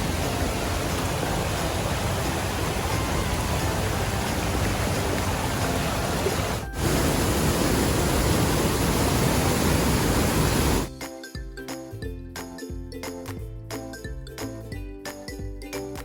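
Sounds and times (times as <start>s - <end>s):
rushing water roar: 0.0s - 10.9s.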